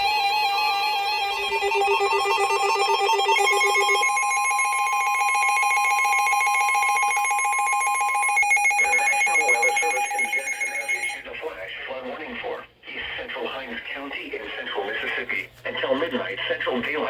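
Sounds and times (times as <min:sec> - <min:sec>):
electronic alert tones warbling: 0:01.0 - 0:11.2
steady high beep: 0:01.2 - 0:11.2.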